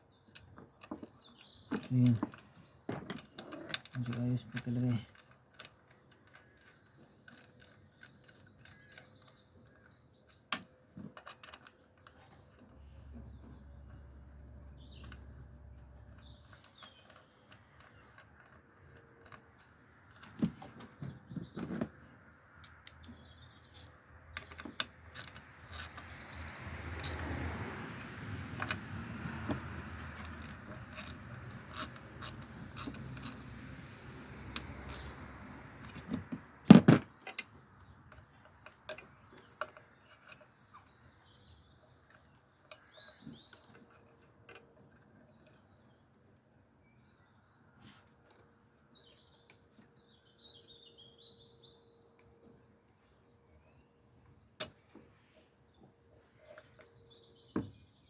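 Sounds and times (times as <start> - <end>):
hand tools clicking on metal: 22.6 - 26.2, 27.0 - 35.2.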